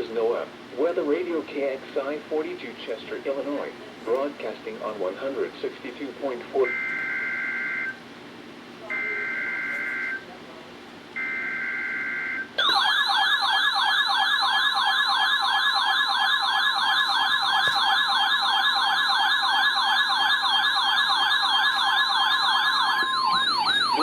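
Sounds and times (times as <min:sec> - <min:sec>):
warbling siren-like alarm: 0:11.2 - 0:24.0
steady attention tone: 0:16.3 - 0:24.0.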